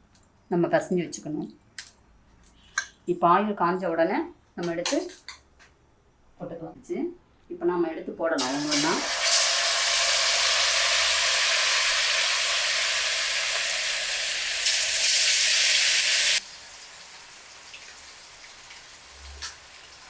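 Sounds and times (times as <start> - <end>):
chicken frying in hot oil: 8.4 - 20.0.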